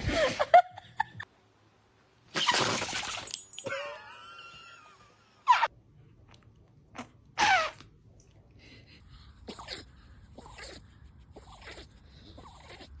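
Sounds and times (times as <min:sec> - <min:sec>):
dog sneezing: 0:07.0 - 0:07.9.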